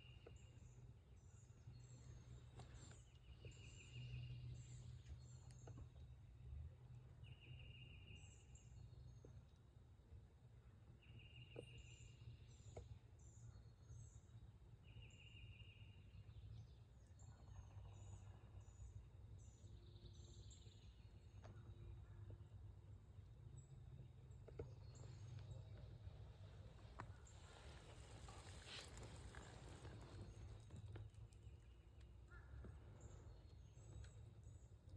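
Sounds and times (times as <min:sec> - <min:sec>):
songbird trill: 0:00.0 - 0:06.2, 0:06.9 - 0:09.7, 0:11.0 - 0:22.6.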